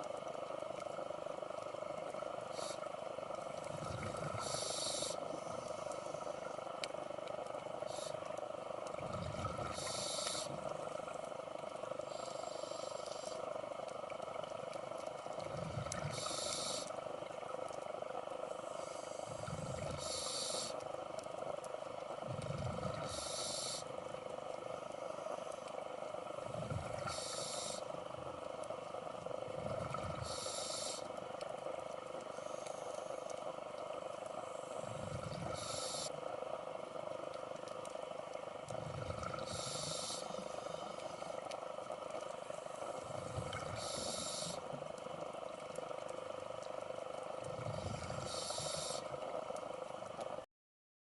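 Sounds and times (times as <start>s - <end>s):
rumble of bubbles: 0.0s - 12.2s, 13.6s - 20.3s, 20.9s - 25.0s, 25.9s - 30.5s, 33.3s - 36.0s, 36.6s - 50.4s
steady hum: 0.0s - 50.4s
diver breathing through regulator: 34.4s - 36.1s, 38.7s - 41.4s, 42.8s - 44.7s, 47.5s - 49.1s.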